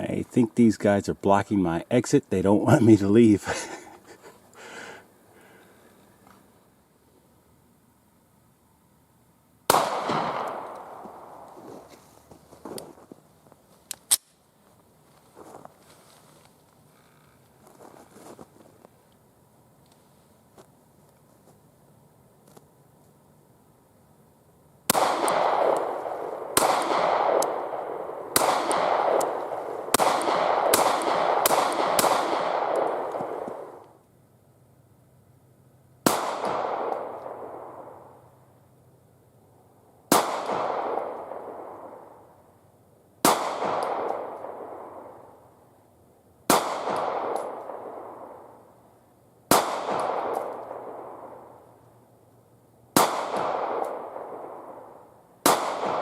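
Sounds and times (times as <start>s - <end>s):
pistol shots with echo: 9.7s - 11.5s, 24.9s - 33.8s, 36.0s - 38.1s, 40.1s - 42.2s, 43.2s - 45.4s, 46.5s - 48.5s, 49.5s - 51.6s, 53.0s - 56.0s.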